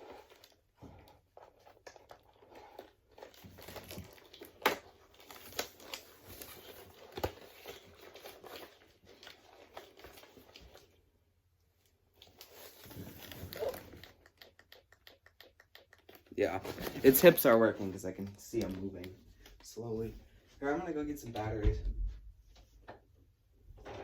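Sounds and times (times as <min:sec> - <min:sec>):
packaging rustling and crinkling: 0:00.0 - 0:11.0, 0:12.1 - 0:14.3, 0:16.4 - 0:19.8.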